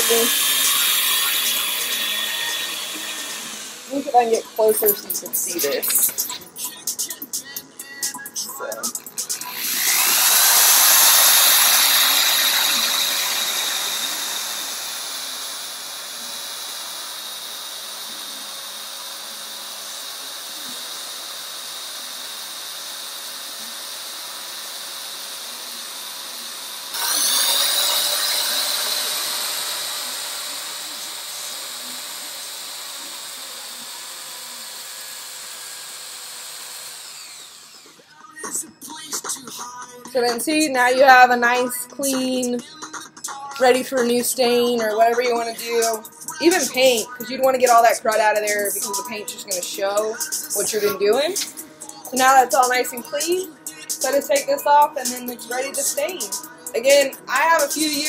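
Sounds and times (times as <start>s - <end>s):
electric drill motor whine: 0.0s - 58.0s
sandpaper hissing on wood: 50.6s - 51.6s.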